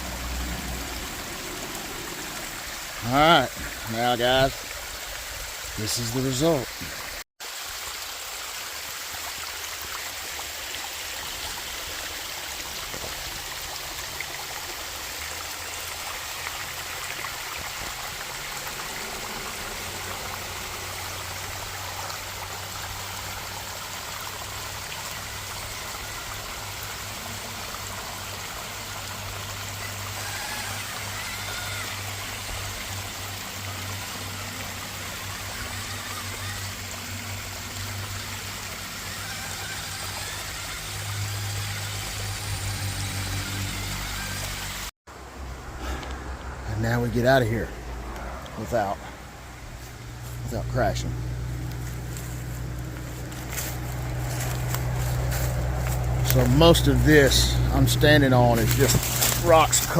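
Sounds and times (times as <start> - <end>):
waterfall rushing: 0.0 - 47.4, 51.9 - 59.9
low steady hum: 47.8 - 59.9.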